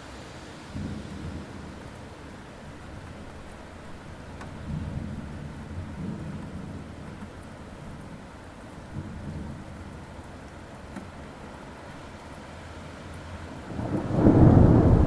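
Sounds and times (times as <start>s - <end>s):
steady rain: 0.0s - 15.0s
thunder rumbling: 13.6s - 15.0s.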